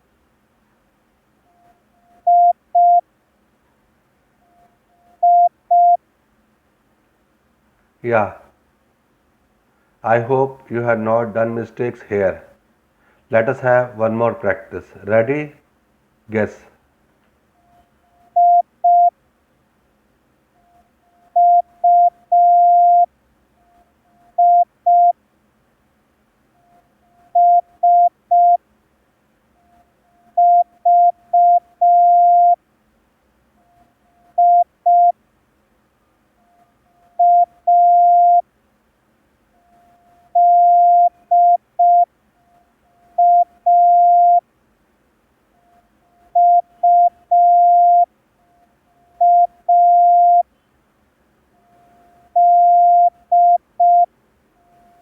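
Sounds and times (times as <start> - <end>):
morse code beeps: 1.5 - 3.0, 4.5 - 6.0, 17.6 - 19.1, 20.6 - 25.2, 26.6 - 28.6, 30.4 - 32.6, 33.7 - 35.2, 36.4 - 38.4, 39.6 - 44.4, 45.6 - 50.5, 51.6 - 55.0.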